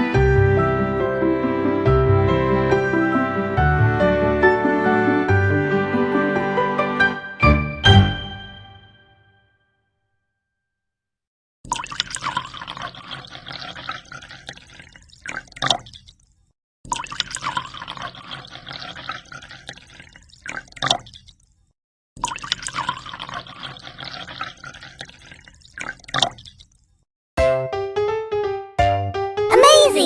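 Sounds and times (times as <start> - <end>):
water splashing and dripping: 11.7 - 21.6, 22.2 - 26.9.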